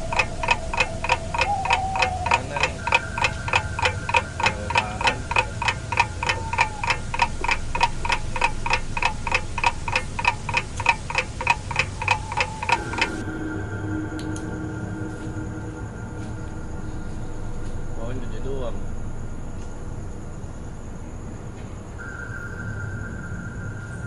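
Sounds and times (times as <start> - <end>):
clock-like ticking: 0.0 - 14.8
steady held tone: 0.0 - 20.4
low hum: 0.0 - 24.0.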